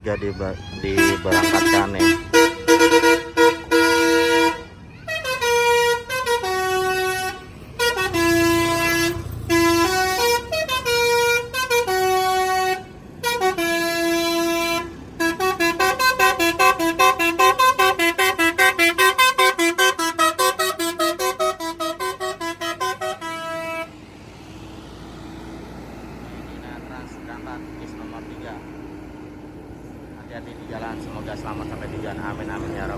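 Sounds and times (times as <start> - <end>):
musical air horn playing tunes: 1.0 - 23.9.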